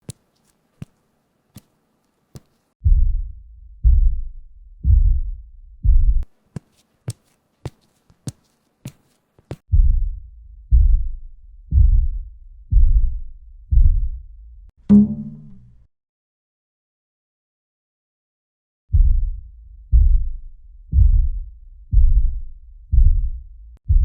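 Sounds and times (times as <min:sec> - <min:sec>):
heavy deep thuds through ceiling: 0:02.8 - 0:06.3, 0:09.6 - 0:14.3, 0:18.9 - 0:24.0.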